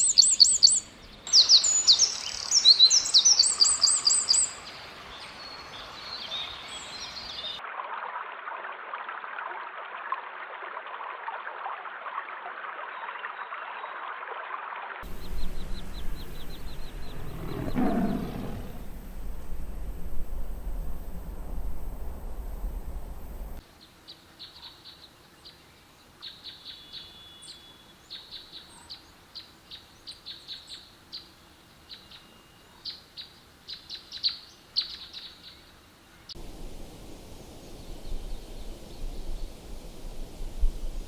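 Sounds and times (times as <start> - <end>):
birds chirping: 15.0 - 23.6, 36.4 - 41.0
low noisy rumble: 15.0 - 23.6, 36.4 - 41.0.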